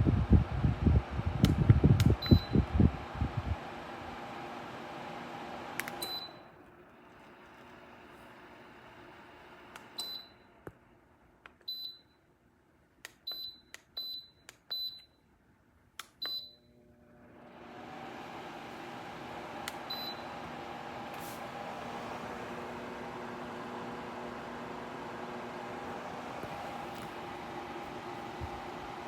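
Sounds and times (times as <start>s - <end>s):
fan airflow whoosh: 0.0s - 4.2s, 20.6s - 23.2s, 25.7s - 29.0s.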